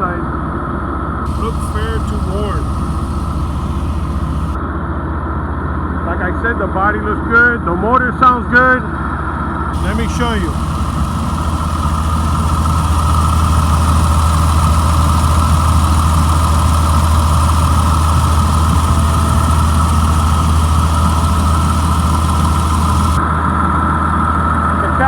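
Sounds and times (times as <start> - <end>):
diesel bus engine idling: 1.3 - 4.6, 9.8 - 25.0
steady engine whine: 1.3 - 4.6, 9.8 - 25.0.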